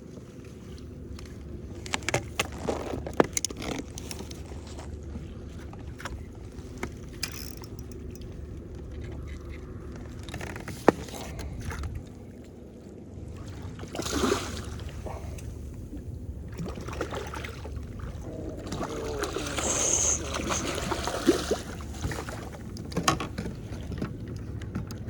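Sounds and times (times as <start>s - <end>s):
low rumble of water: 0.0s - 25.0s
water splashing: 7.7s - 24.8s
knocks and clicks on kayak: 22.8s - 25.0s.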